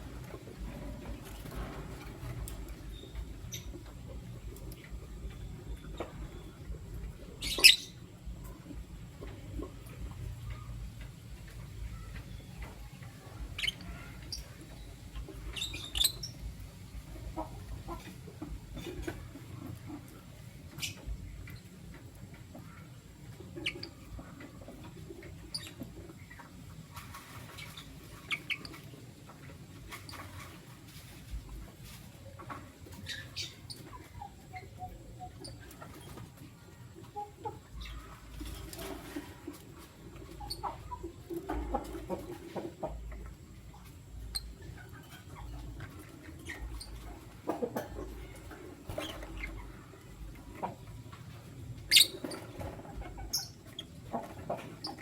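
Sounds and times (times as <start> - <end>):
low steady hum: 0.0 - 55.0
lovebirds chirping: 2.4 - 8.3, 11.8 - 19.1, 32.9 - 39.0, 44.2 - 50.9, 51.8 - 55.0.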